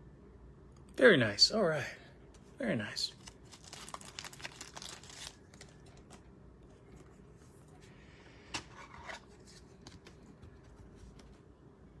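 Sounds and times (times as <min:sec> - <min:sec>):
trading cards rustling and clicking: 0:03.1 - 0:06.3.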